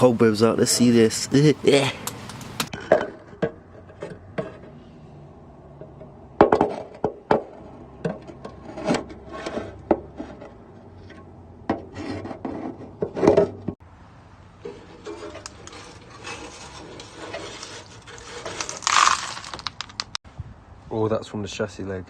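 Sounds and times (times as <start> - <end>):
tool scraping metal: 14.6 - 19.8.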